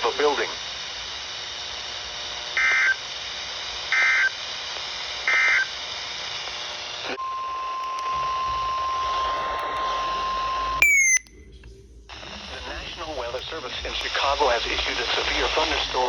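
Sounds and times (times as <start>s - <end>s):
receiver hiss: 0.0s - 16.0s
falling chirp: 10.8s - 11.3s.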